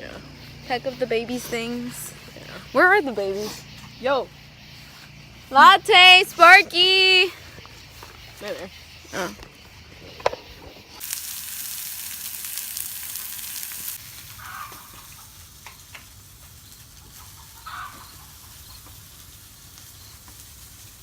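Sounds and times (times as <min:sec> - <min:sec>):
food sizzling in a pan: 0:11.0 - 0:21.0.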